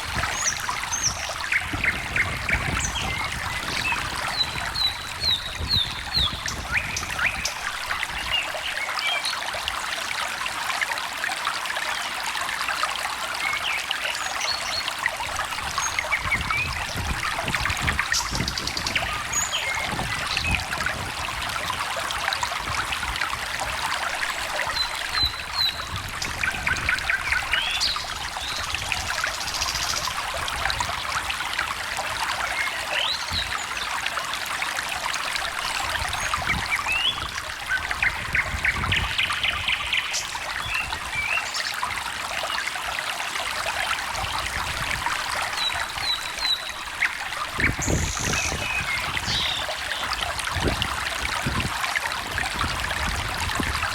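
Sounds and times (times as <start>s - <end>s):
stream trickling: 0.0s - 53.9s
birds chirping and trilling: 0.2s - 9.4s, 15.5s - 20.7s, 24.2s - 30.3s, 35.5s - 41.9s, 45.5s - 50.2s.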